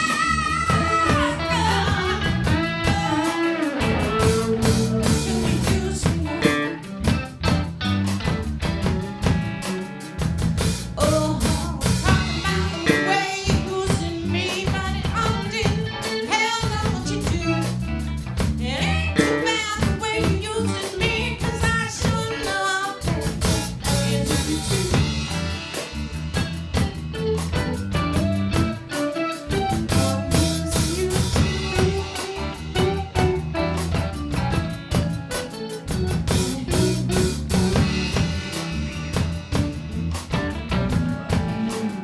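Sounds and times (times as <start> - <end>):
person singing: 0.0 - 7.0, 11.0 - 17.8, 18.6 - 25.4, 36.3 - 38.2
drums: 0.0 - 42.0
guitar: 0.0 - 42.0.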